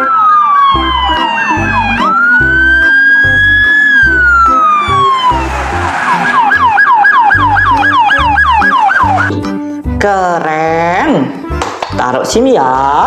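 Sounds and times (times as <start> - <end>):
police siren wailing and yelping: 0.0 - 9.3
background music with steady beat: 0.0 - 13.0.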